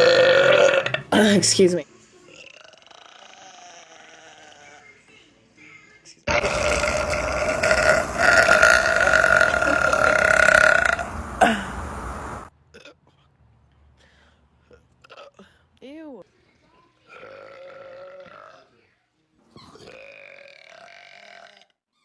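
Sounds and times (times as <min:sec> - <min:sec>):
woman burping: 0:00.0 - 0:01.4, 0:06.3 - 0:12.0.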